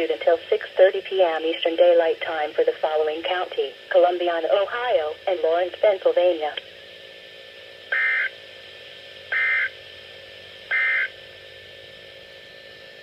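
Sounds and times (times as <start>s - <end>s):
radio hiss: 0.0s - 13.0s
emergency alert data tones: 7.9s - 8.3s, 9.3s - 9.7s, 10.7s - 11.2s.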